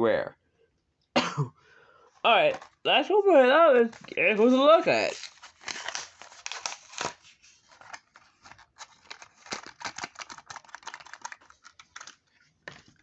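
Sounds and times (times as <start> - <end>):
plastic and cardboard packaging crinkling: 3.9 - 13.0.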